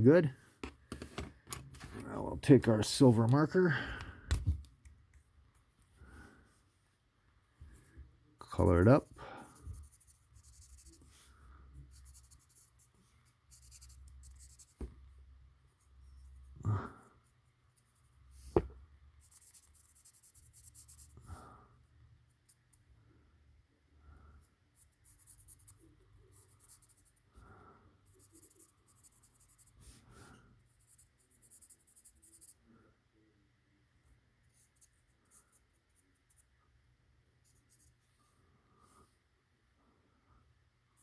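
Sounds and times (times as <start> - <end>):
marker scratching on wood: 9.6 - 11.2, 11.9 - 14.9, 17.8 - 21.2, 28.1 - 29.9.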